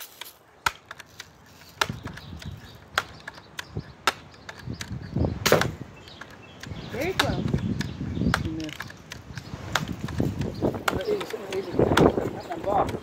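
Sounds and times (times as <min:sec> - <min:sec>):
pellet gun handling clicks: 0:00.0 - 0:10.6
pellet gun shot: 0:05.4 - 0:05.8.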